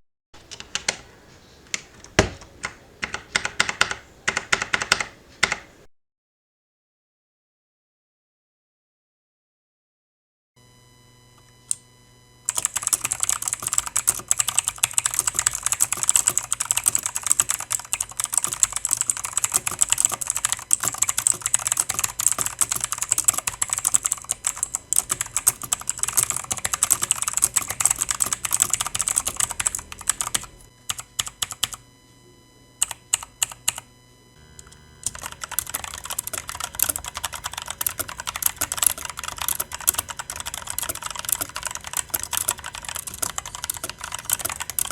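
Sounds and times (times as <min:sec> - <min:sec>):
typing on mechanical keyboard: 0:00.4 - 0:01.0, 0:01.8 - 0:05.7, 0:12.5 - 0:31.8, 0:32.8 - 0:33.8, 0:34.6 - 0:44.9.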